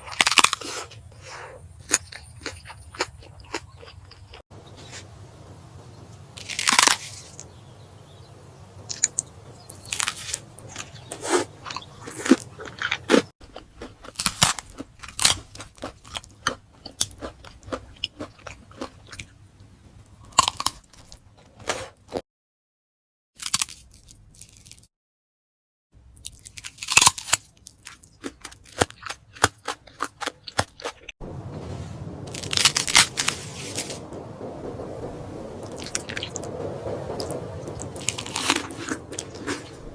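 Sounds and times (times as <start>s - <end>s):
biting and chewing food: 0.0s - 5.6s, 6.2s - 7.7s, 8.8s - 22.2s, 23.4s - 24.9s, 26.1s - 31.2s, 32.3s - 34.0s, 38.0s - 39.9s
sharp crunches: 0.0s - 5.6s, 6.3s - 7.7s, 8.8s - 19.3s, 26.2s - 31.1s, 32.3s - 34.0s, 37.2s - 39.9s
mouth clicks: 8.8s - 10.0s.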